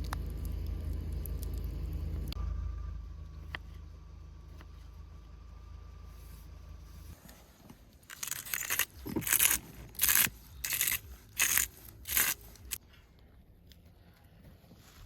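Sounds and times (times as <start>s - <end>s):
rough scraping strokes: 6.1s - 12.8s.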